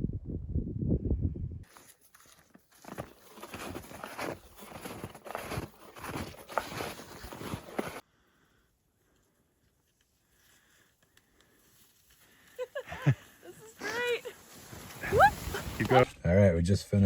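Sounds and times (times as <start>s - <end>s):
snowshoe footsteps crunching in snow: 1.7s - 8.0s, 11.7s - 16.0s.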